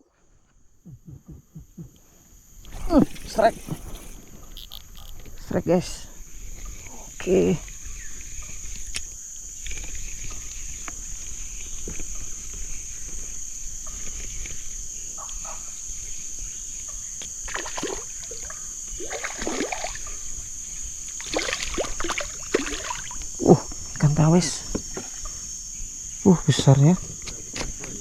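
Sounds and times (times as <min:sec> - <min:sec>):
high drone of insects: 0:00.0 - 0:28.0
water splashing: 0:17.5 - 0:20.2, 0:21.2 - 0:23.3.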